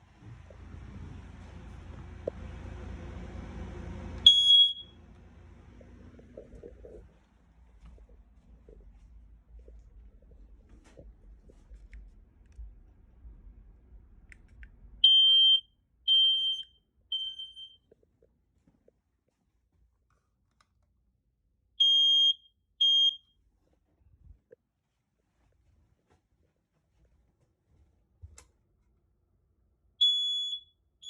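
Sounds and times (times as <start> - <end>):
smoke alarm beeps: 4.2 - 5.0, 15.0 - 17.8, 21.8 - 23.3, 30.0 - 31.0.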